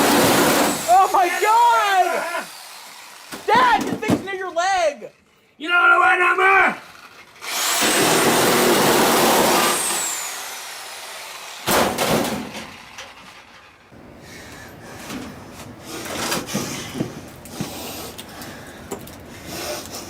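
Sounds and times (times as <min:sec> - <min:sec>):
power tool motor whine: 0:00.0 - 0:01.0, 0:02.0 - 0:03.5, 0:06.8 - 0:11.8.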